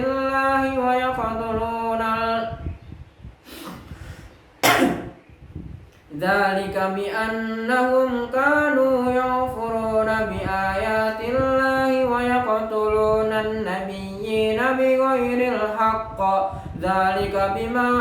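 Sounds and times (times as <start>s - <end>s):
man chanting melodically: 0.0s - 2.6s, 6.1s - 18.0s
burst of breath: 3.4s - 4.4s.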